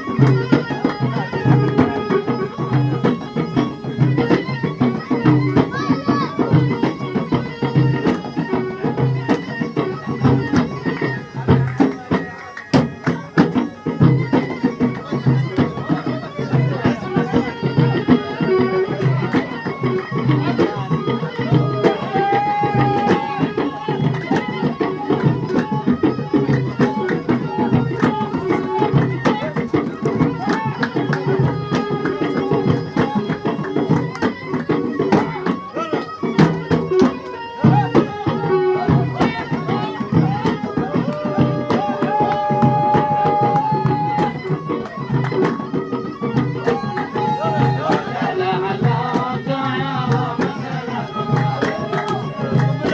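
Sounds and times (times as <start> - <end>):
hand drums beating fast rhythm: 0.0 - 52.9.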